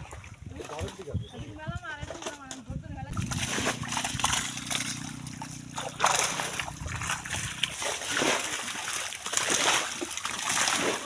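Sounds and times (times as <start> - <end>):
water splashing and sloshing: 0.0 - 11.0
low hum: 3.0 - 9.4.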